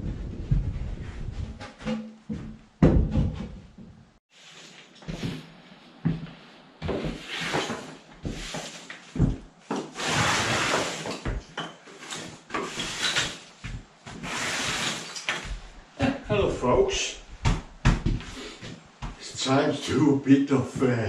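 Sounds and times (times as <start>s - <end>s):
sawdust scraped across wooden floor: 7.0s - 9.0s, 9.8s - 15.4s.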